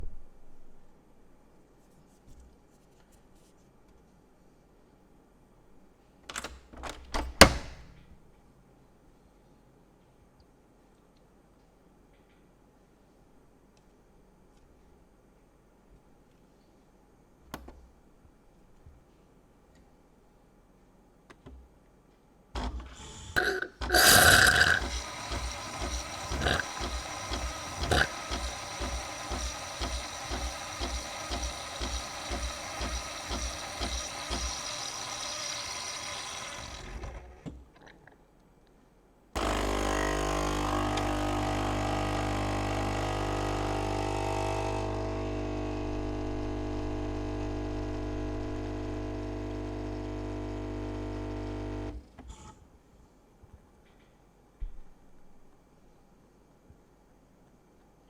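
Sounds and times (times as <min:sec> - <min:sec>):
coffee machine pump humming: 0:22.6 - 0:37.6, 0:39.4 - 0:52.1
coffee machine pump pulsing: 0:22.6 - 0:37.6, 0:39.4 - 0:52.5
milk frothing hiss: 0:22.8 - 0:37.4, 0:42.8 - 0:52.5.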